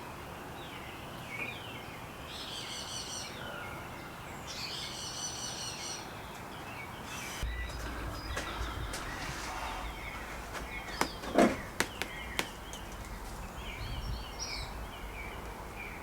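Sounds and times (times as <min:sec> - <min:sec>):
songbirds singing: 0:00.0 - 0:16.0
low rumble: 0:07.3 - 0:16.0
sharp knocks: 0:07.4 - 0:12.9.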